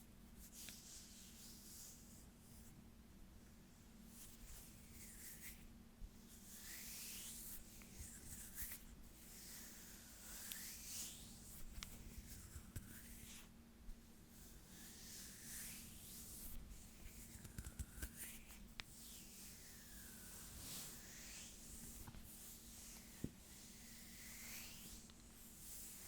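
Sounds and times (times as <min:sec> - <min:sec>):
hands rubbing softly: 0:00.3 - 0:02.8, 0:04.0 - 0:26.0.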